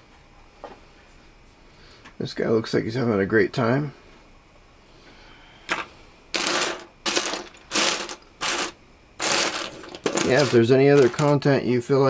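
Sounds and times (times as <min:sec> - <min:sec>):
plastic toy pieces clattering: 0:06.4 - 0:11.4.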